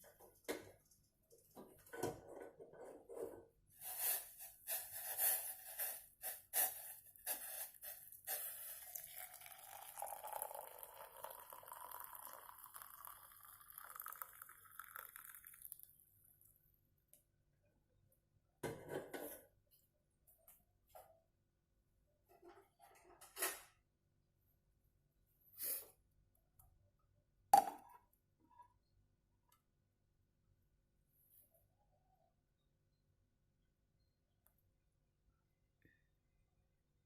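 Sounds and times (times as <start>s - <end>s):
liquid poured into a glass: 7.7s - 16.0s.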